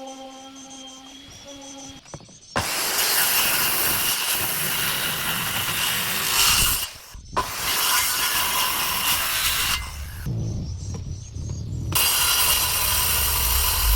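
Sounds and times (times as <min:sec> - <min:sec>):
power tool cutting wood: 0:02.6 - 0:10.3, 0:11.9 - 0:13.9.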